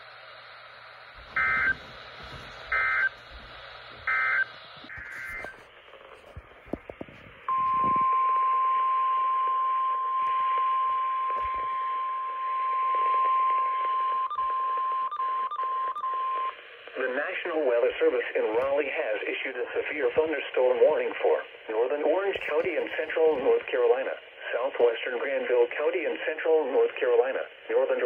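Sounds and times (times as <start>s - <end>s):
radio hiss: 0.0s - 8.0s, 16.5s - 28.0s
brief blips: 1.2s - 1.8s, 4.0s - 5.6s
loud steady alarm beep: 1.2s - 1.8s, 2.4s - 3.2s, 4.0s - 5.6s.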